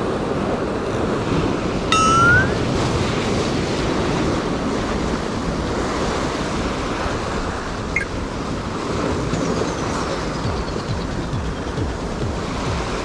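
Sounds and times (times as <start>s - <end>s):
surf washing on rocky shore: 0.0s - 10.4s
wind buffeting microphone: 0.0s - 13.0s
rising chirp: 1.9s - 2.8s.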